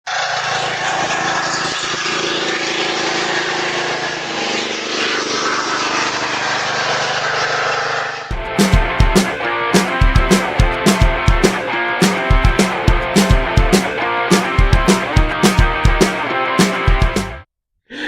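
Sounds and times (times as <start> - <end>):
lawnmower engine running: 0.1 - 17.2
rock music with drums and guitar: 8.3 - 17.4.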